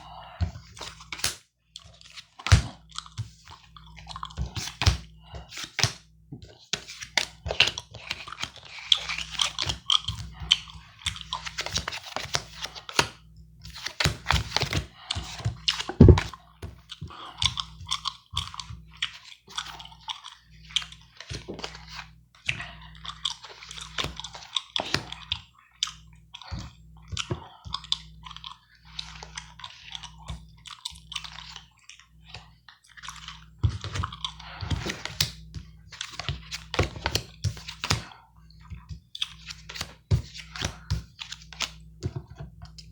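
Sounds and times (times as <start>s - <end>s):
gum chewing clicks and smacks: 0.7s - 4.8s, 7.3s - 11.5s, 15.0s - 36.7s
playing cards being handled: 6.7s - 16.8s, 39.2s - 42.6s.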